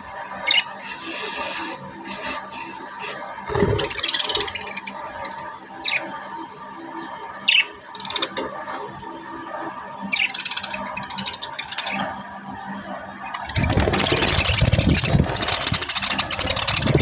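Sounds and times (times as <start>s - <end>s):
budgerigars chirping and chattering: 0.4s - 6.0s, 10.1s - 12.1s, 13.4s - 17.0s.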